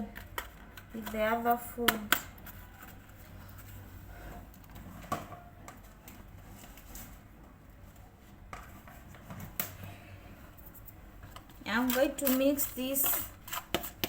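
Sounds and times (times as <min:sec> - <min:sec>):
low room noise: 0:00.0 - 0:14.0.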